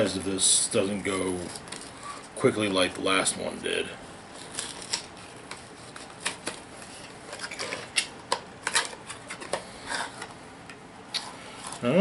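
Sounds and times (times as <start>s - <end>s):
packaging clicking and crinkling: 4.4s - 9.6s.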